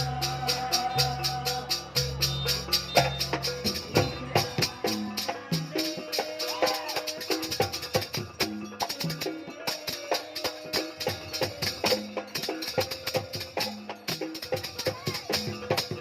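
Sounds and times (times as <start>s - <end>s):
low held tones: 0.0s - 5.4s
held pitched tones: 0.0s - 12.4s
fast percussion beat: 0.0s - 16.0s.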